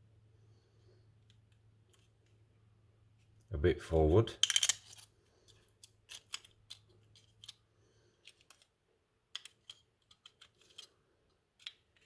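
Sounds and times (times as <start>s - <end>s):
small model car parts clicking: 4.4s - 12.0s.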